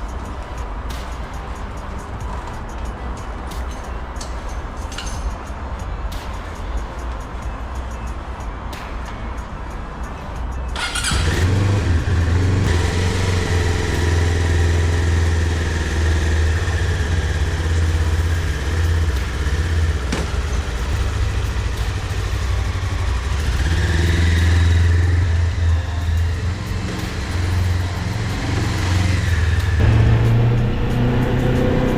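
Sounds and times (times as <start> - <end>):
motorcycle engine running: 10.8 - 31.0.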